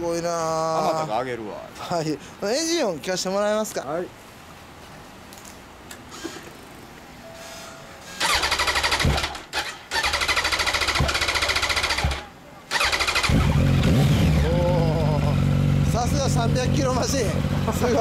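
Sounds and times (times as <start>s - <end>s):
electric starter cranking: 8.2s - 14.8s
motorcycle engine running: 10.1s - 18.0s.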